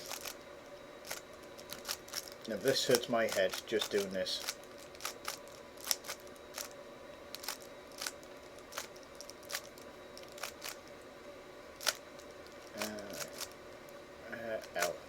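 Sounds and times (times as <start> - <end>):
plastic puzzle cube clicking: 7.4 - 8.1.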